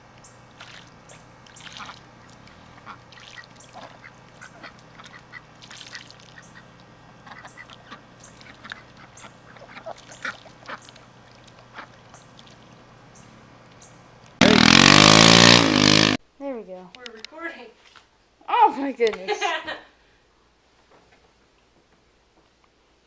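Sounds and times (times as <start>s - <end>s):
ducks quacking: 1.6s - 2.0s, 2.6s - 12.6s
loud pitched blast: 14.4s - 16.2s.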